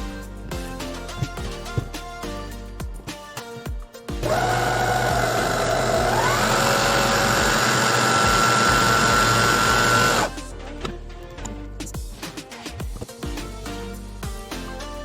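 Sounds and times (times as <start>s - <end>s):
stand mixer motor whining: 4.2s - 10.3s.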